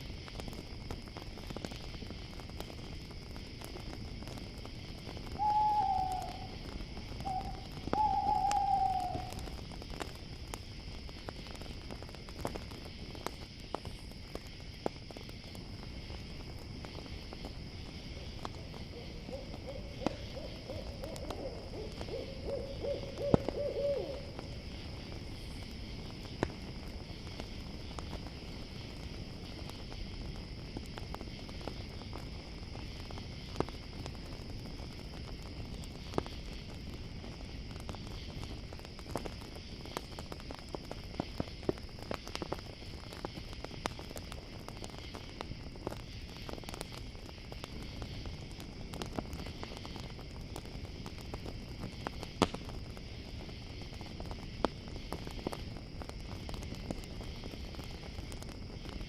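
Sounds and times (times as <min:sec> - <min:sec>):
campfire crackling: 0:00.0 - 0:59.0
crickets chirping: 0:00.0 - 0:59.0
owl hooting: 0:05.4 - 0:06.6, 0:07.2 - 0:09.4, 0:18.9 - 0:24.4.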